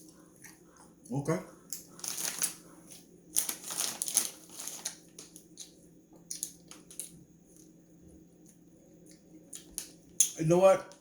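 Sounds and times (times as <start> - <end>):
plastic packaging crinkling: 2.0 - 5.5.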